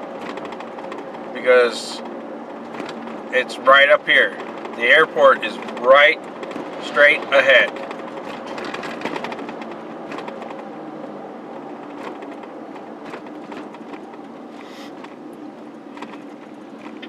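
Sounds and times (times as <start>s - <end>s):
engine and tyre hum: 0.0s - 17.0s.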